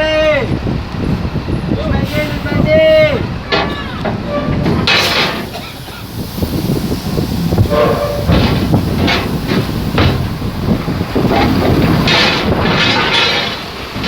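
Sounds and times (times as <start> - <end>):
bus engine rumbling: 0.0 - 14.0
knocks and clanks on ramp: 3.4 - 6.2, 7.2 - 14.0.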